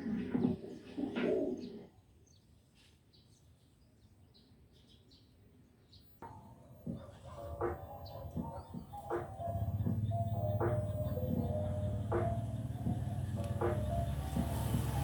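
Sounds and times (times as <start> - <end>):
steady tones: 8.7 - 15.0.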